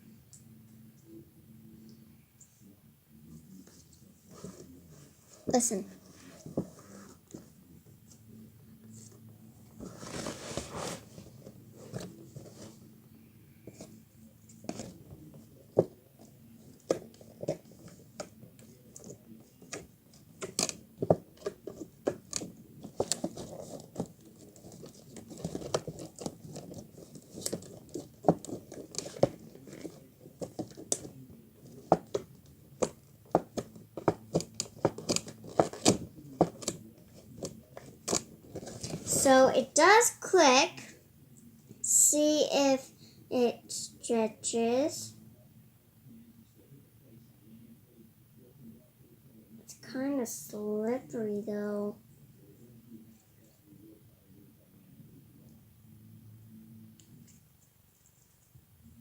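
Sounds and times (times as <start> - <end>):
soft squishing: 1.8 - 45.2, 56.9 - 59.0.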